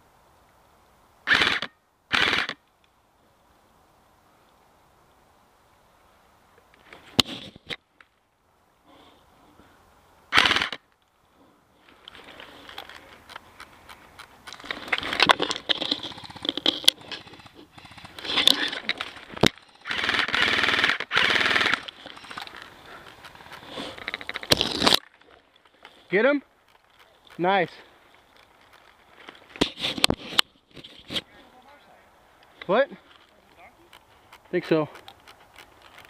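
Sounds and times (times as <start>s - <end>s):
airsoft guns firing bursts: 10.3s - 10.8s, 19.8s - 21.9s.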